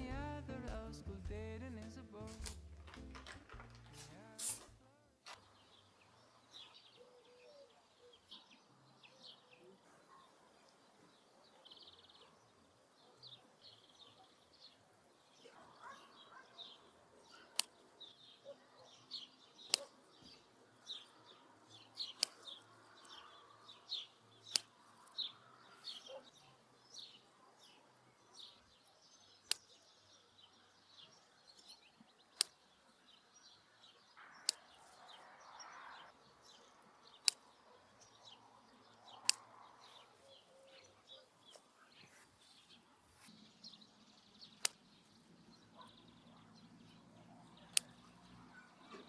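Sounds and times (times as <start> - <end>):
small birds chirping: 0.0 - 49.0
sharp click: 32.4 - 32.6, 37.2 - 37.6.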